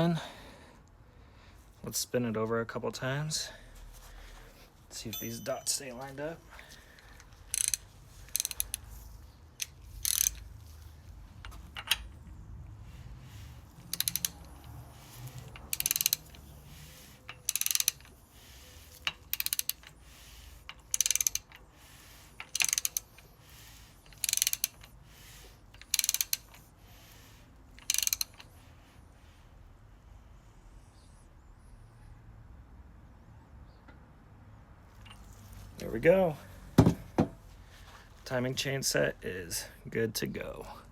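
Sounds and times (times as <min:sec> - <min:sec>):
ratchet wrench clicking: 0:07.0 - 0:09.0, 0:09.6 - 0:10.6, 0:13.4 - 0:18.2, 0:18.9 - 0:28.5.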